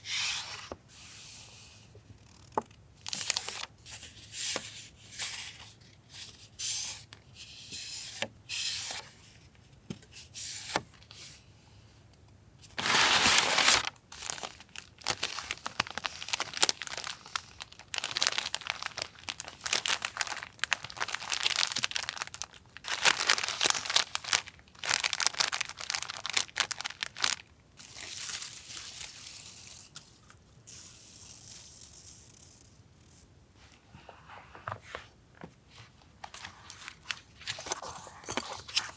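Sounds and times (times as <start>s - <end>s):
packaging crinkling and tearing: 12.8s - 30.0s.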